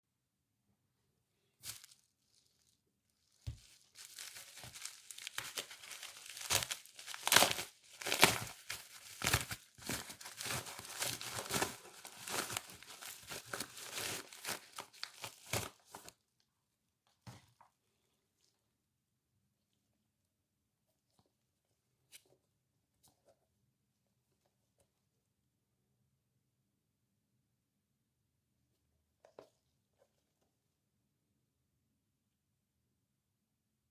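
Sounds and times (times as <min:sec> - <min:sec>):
packaging crackling and rustling: 0:01.6 - 0:16.2.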